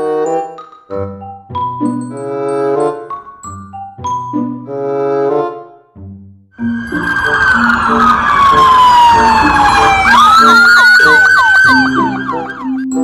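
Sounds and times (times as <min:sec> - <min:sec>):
light rhythmic music: 0:00.0 - 0:06.2
siren wailing and warbling: 0:06.6 - 0:13.0.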